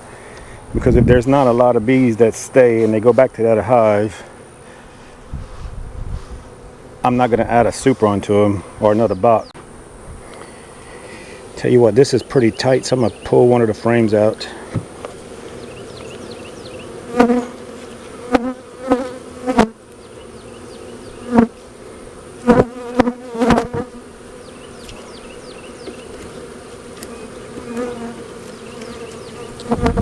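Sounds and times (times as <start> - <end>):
honeybees buzzing: 0.0 - 30.0
bees buzzing past microphone: 12.3 - 30.0.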